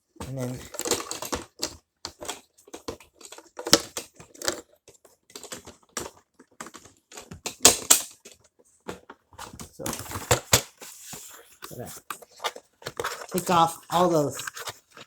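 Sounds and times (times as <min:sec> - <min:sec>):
packaging crinkling: 0:09.7 - 0:15.0.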